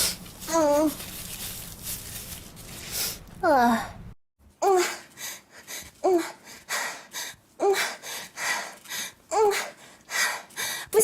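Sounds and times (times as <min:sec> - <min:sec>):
noisy breaths: 0:05.1 - 0:10.9.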